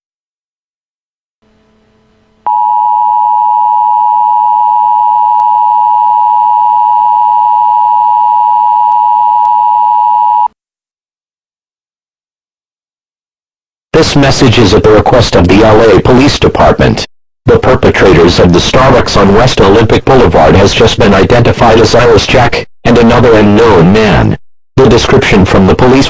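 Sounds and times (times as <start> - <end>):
faint hum: 1.5 - 10.5.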